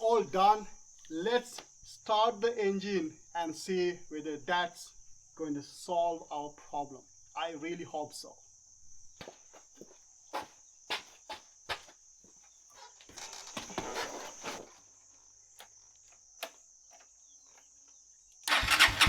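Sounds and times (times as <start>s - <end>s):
insect chirring: 0.0s - 19.0s
rustling and shuffling: 9.1s - 17.8s.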